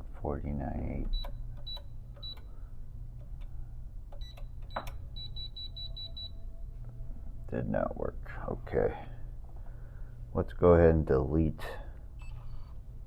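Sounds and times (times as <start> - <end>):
keypad beeps: 1.1 - 2.5, 4.2 - 6.4.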